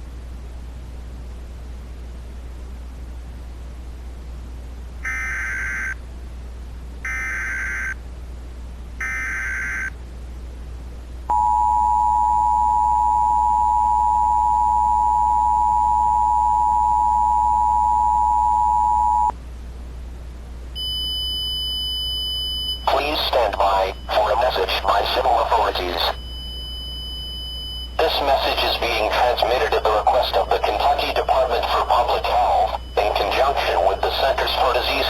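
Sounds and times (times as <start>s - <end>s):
steady low hum: 0.0s - 35.0s
two-tone attention signal: 11.3s - 19.3s
data bursts: 22.8s - 26.2s, 27.9s - 35.0s.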